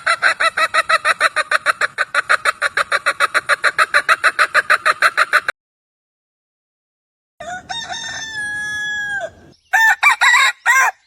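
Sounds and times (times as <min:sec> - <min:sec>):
chicken clucking: 0:00.0 - 0:05.5.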